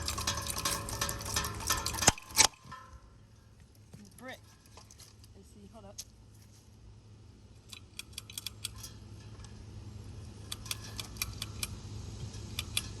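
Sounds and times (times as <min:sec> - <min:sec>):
metallic clicks and rattles: 0:00.0 - 0:03.0, 0:07.6 - 0:09.6, 0:10.3 - 0:13.0
steady low hum: 0:00.0 - 0:13.0.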